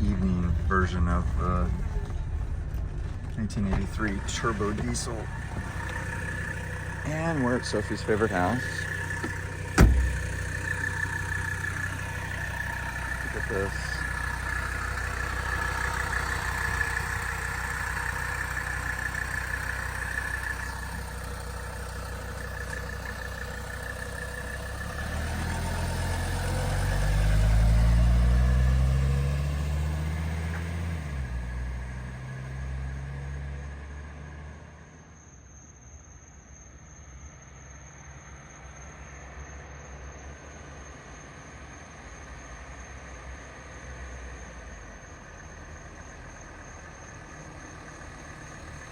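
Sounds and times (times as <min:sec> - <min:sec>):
diesel engine running: 0:00.0 - 0:35.3, 0:38.4 - 0:48.9.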